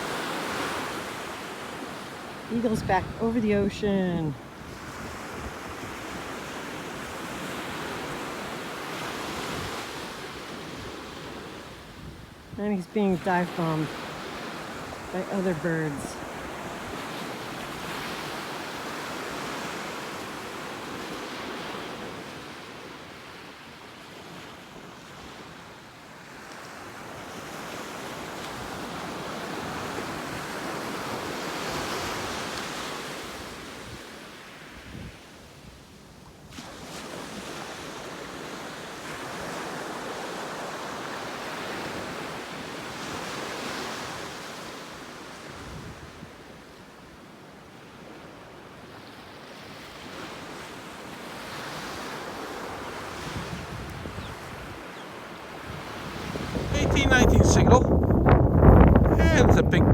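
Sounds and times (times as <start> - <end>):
ocean surf breaking: 12.6 - 22.2, 54.4 - 59.9
wind on microphone: 53.2 - 54.8, 55.6 - 59.9.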